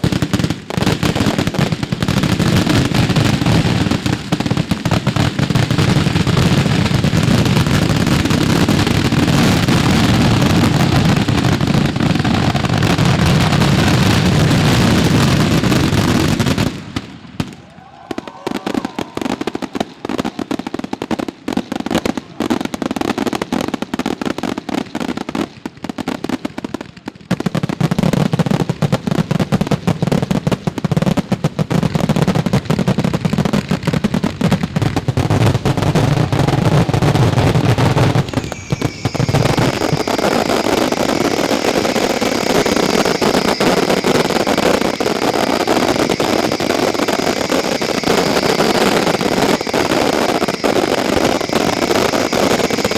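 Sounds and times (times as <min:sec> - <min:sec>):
firecrackers going off rapidly: 0:00.0 - 0:52.9
high whistling tones: 0:09.2 - 0:16.3, 0:17.8 - 0:21.0, 0:35.7 - 0:52.9
steady hiss: 0:35.3 - 0:52.9.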